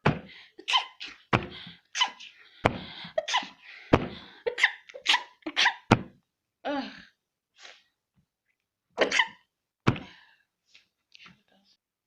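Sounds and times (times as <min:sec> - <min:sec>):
voiced breath: 0:01.4 - 0:04.5
person sneezing: 0:03.2 - 0:03.6, 0:09.0 - 0:09.5.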